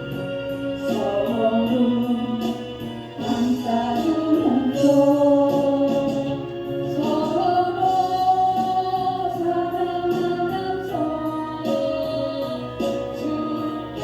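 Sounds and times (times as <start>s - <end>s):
voices singing a hymn: 0.0s - 14.0s.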